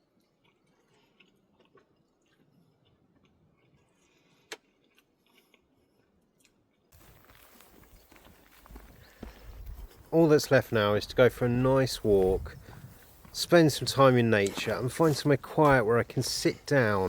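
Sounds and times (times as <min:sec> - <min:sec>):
chewing food: 0:00.0 - 0:10.1.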